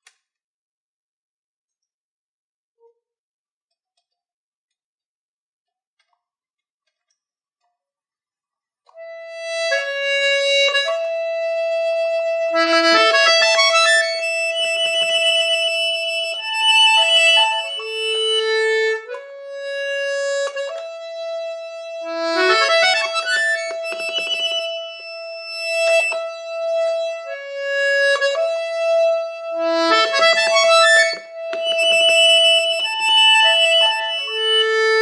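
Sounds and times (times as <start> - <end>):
accordion playing: 9.0 - 35.0.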